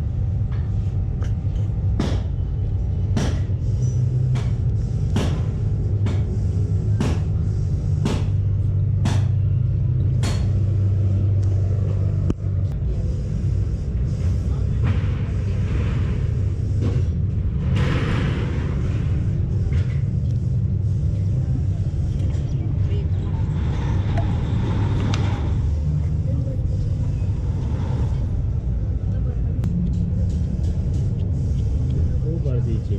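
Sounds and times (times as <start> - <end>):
sharp knocks: 2.0 - 2.3.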